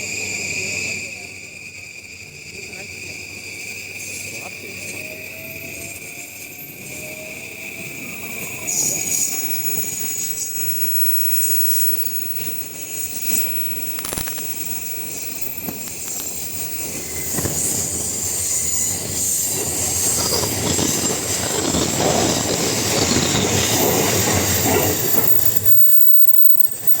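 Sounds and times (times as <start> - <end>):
train wheels on rails: 0.0 - 27.0.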